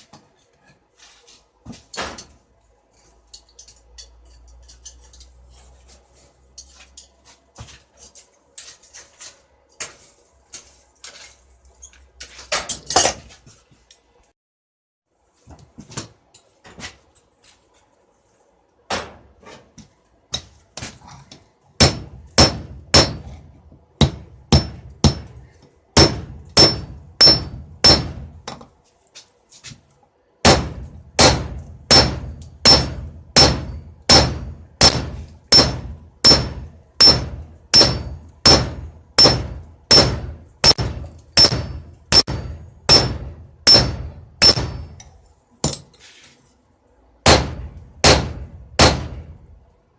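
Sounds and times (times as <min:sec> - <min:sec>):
hammer striking steel on anvil: 0:21.8 - 0:23.4, 0:24.0 - 0:25.4, 0:26.0 - 0:28.6, 0:30.4 - 0:46.0, 0:47.2 - 0:49.4.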